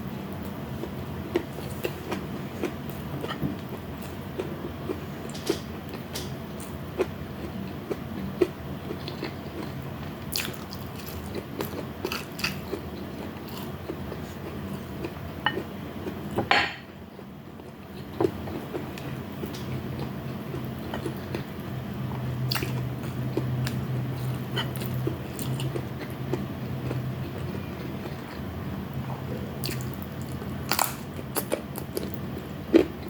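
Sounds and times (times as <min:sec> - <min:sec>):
steady low hum: 0:00.0 - 0:33.0
chewing and biting food: 0:06.6 - 0:16.3, 0:18.0 - 0:21.5, 0:22.4 - 0:28.5, 0:29.2 - 0:33.0.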